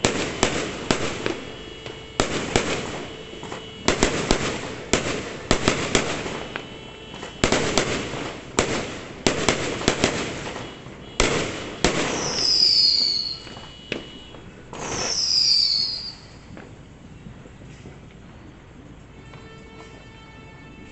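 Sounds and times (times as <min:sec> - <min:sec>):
firework bangs: 0:00.0 - 0:18.2
firework hiss with falling whistle: 0:11.7 - 0:16.6.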